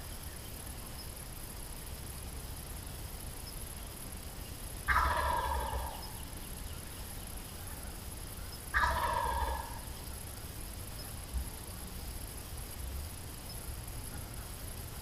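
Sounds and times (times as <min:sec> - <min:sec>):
turkey gobbling: 0:04.9 - 0:06.1, 0:08.7 - 0:09.9.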